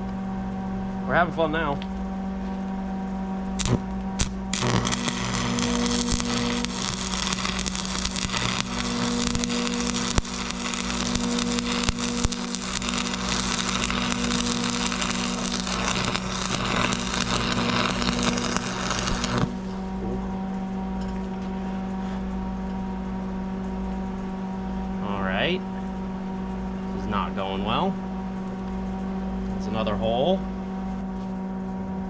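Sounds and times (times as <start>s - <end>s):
welding arc crackling: 3.6s - 20.0s
welding machine hum: 3.6s - 20.1s.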